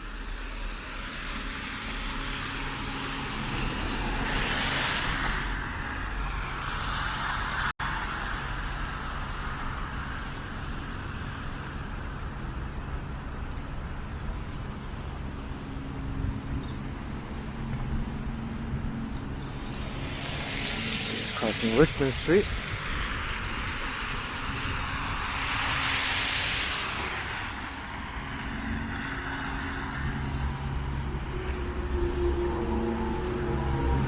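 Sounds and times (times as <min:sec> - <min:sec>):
road traffic hum: 0:00.0 - 0:34.0
vehicle passing: 0:16.8 - 0:34.0.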